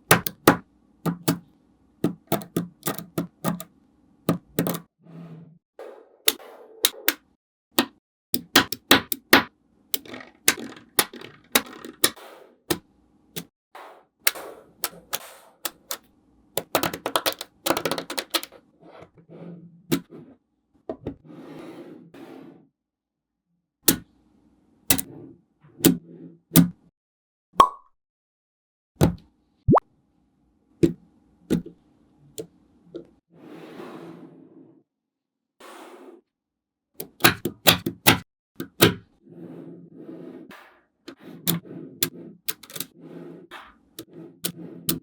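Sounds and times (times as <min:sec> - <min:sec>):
magnetic balls clicking together: 0:02.1 - 0:03.7, 0:10.0 - 0:12.2, 0:16.6 - 0:18.5.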